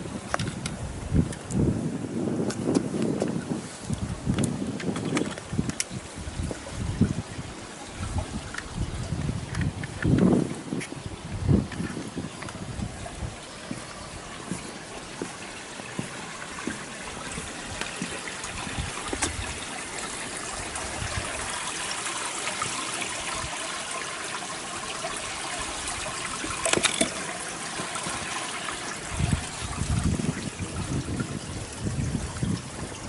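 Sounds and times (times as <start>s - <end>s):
strong wind gusting: 0.0s - 14.5s, 16.6s - 22.0s, 28.0s - 33.0s
wind buffeting microphone: 0.0s - 23.7s, 24.8s - 33.0s.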